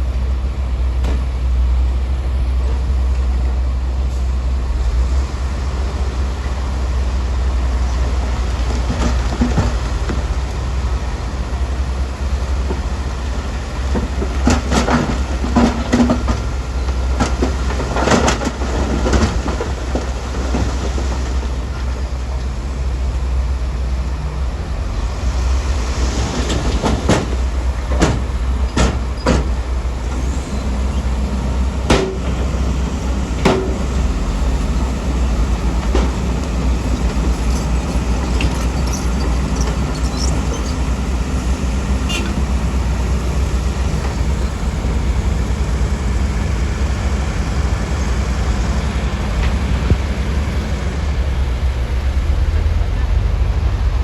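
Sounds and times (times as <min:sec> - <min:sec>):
heavy diesel machinery running: 0:00.0 - 0:54.0
knocks and clanks: 0:26.4 - 0:41.0.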